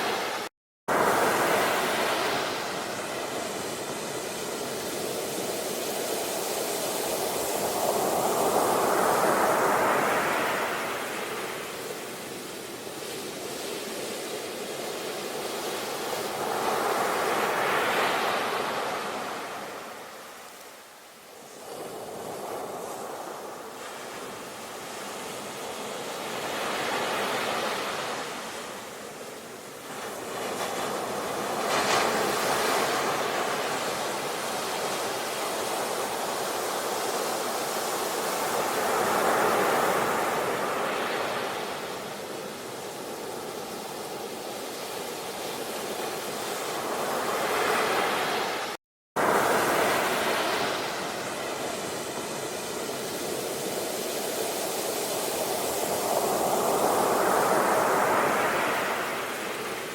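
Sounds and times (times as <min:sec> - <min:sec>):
sea waves breaking on shore: 0:00.0 - 0:59.9.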